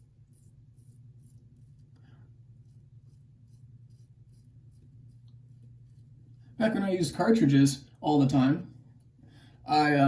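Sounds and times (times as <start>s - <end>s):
low steady hum: 0.0s - 10.0s
razor scratching stubble: 2.5s - 6.3s.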